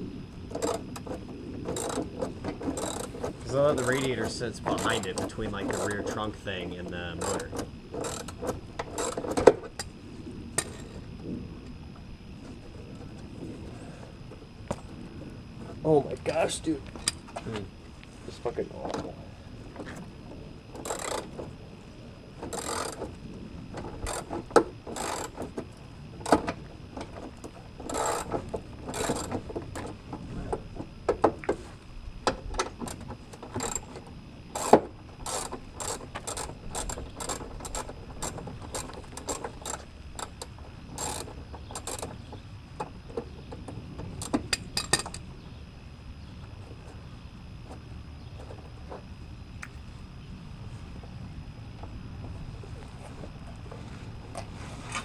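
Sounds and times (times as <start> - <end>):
socket ratchet clicking: 20.8 - 21.3, 22.5 - 23.0, 41.0 - 42.1, 44.2 - 45.2
metal tools knocking: 44.3 - 45.2.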